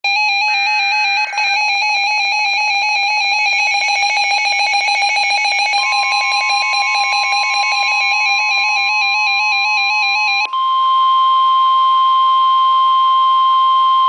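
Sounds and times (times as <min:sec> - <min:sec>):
rapidly pulsing alarm tone: 0:00.0 - 0:10.8.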